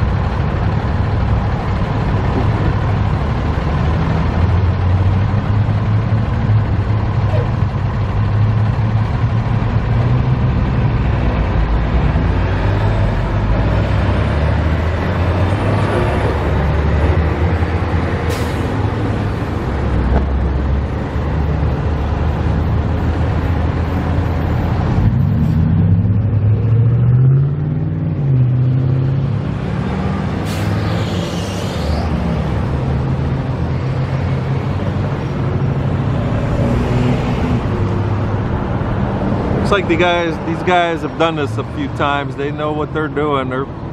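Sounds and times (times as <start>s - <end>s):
vehicle engine revving: 0.0s - 41.6s
street traffic: 0.0s - 43.9s
air brake hiss: 18.3s - 18.8s, 30.4s - 32.1s.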